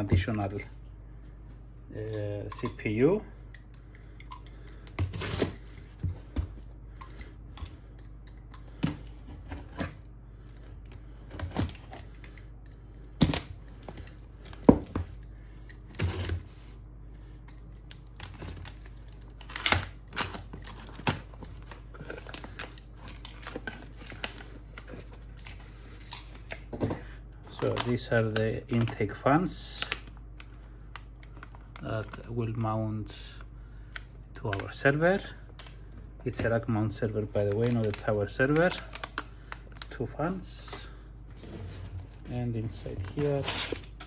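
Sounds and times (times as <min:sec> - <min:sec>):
cardboard boxes being handled: 0:41.3 - 0:44.0.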